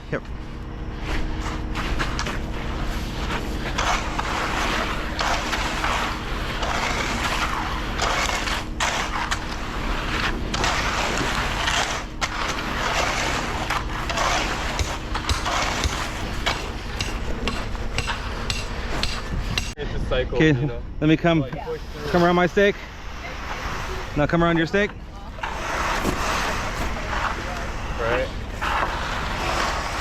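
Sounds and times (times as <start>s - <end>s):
engine humming: 0.0s - 19.8s
rakes scraping wet concrete: 1.0s - 19.3s, 22.0s - 30.0s.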